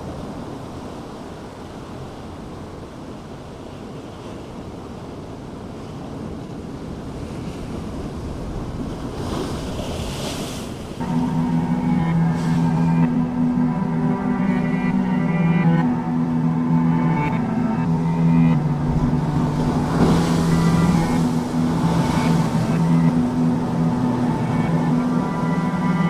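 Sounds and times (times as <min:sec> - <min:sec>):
surf washing on beach: 0:00.0 - 0:26.0
wind buffeting microphone: 0:04.8 - 0:11.1
music: 0:11.0 - 0:26.0.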